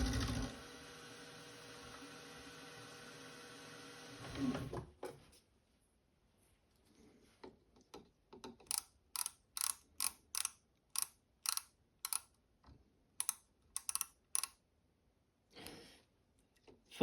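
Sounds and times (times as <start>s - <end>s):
micrometer ratchet clicking: 8.6s - 12.3s, 13.2s - 14.6s.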